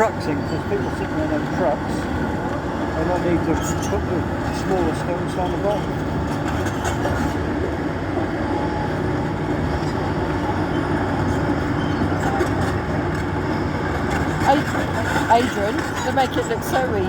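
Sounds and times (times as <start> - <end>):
excavator rumbling: 0.0 - 17.0.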